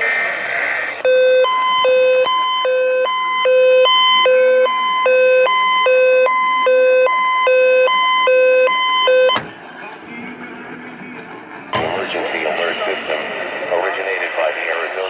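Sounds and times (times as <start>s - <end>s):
buzzy two-tone electronic alarm: 1.0s - 9.5s
radio talk: 11.8s - 15.0s.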